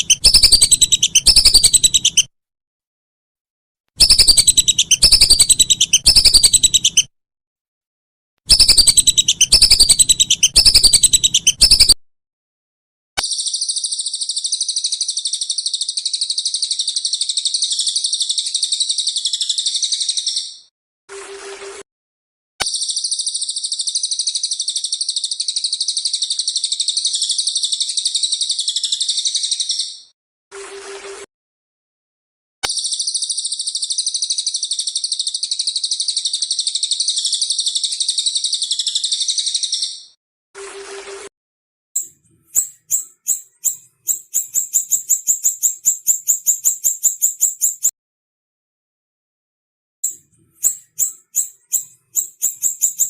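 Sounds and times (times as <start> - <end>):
high bird chirps: 0.0 - 2.3, 4.0 - 7.1, 8.5 - 12.0, 13.2 - 20.7, 22.7 - 30.1, 32.7 - 40.2, 42.0 - 47.9, 50.0 - 53.0
high-pitched bird trill: 0.0 - 2.3, 4.0 - 7.1, 8.5 - 12.0, 42.0 - 47.9, 50.0 - 53.0.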